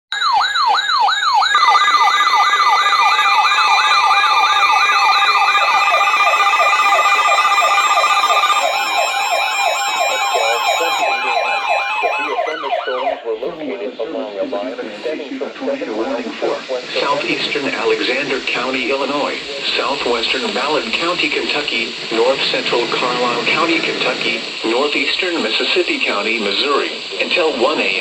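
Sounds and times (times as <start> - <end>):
electronic siren tones sweeping: 0.1 - 13.4, 16.9 - 25.0
steady high alert tone: 0.1 - 13.6, 16.0 - 25.1.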